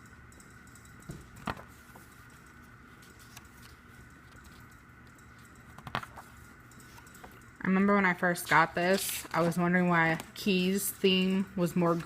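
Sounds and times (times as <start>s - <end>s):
steady faint hum: 0.0s - 12.0s
paper booklet handling: 1.4s - 4.7s, 5.7s - 7.4s, 8.9s - 10.3s
page rustles: 2.9s - 4.7s.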